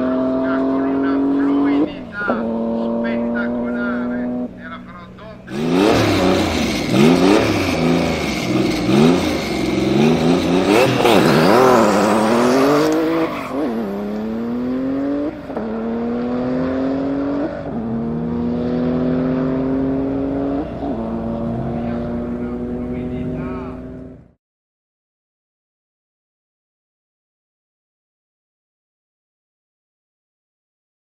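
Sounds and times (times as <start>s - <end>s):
car accelerating through gears: 0.0s - 4.6s, 5.5s - 24.4s
car engine revving: 0.0s - 24.4s.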